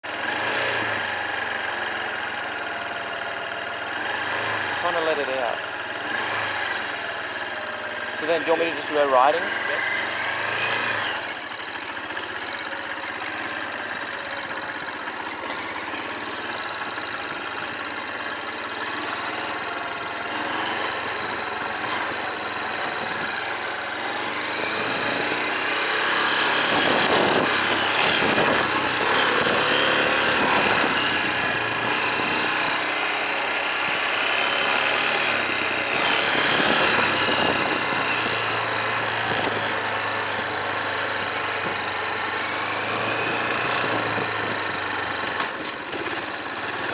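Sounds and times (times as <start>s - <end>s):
dirt bike engine revving: 0.2s - 1.4s, 3.9s - 7.1s, 8.0s - 12.6s, 18.5s - 46.9s.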